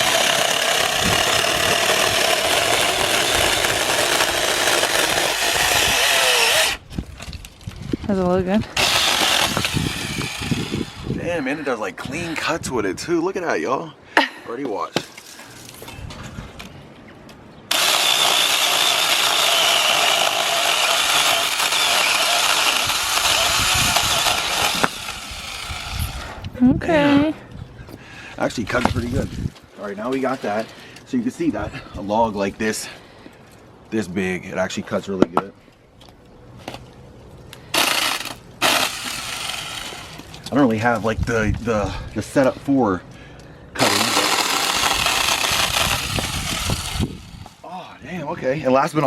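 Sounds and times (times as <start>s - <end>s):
chainsaw cutting wood: 0.0s - 6.8s, 8.8s - 11.2s, 17.7s - 26.4s, 37.7s - 40.3s, 43.8s - 47.6s.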